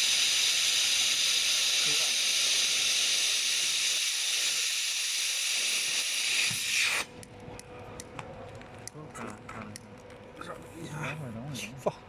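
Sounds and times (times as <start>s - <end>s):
laser welder hissing: 0.0s - 7.2s.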